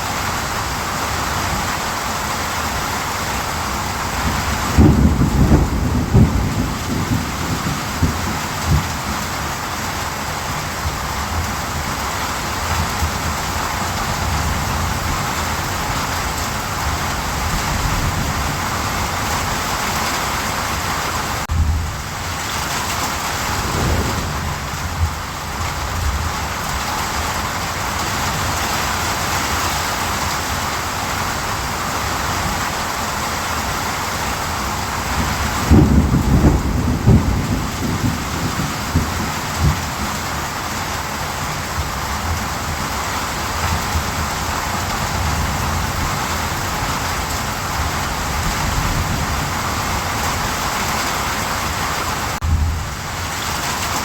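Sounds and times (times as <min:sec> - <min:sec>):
steady rain falling: 0:00.0 - 0:54.0
thunder rumbling and cracking: 0:03.9 - 0:12.0, 0:21.5 - 0:29.0, 0:34.8 - 0:40.6.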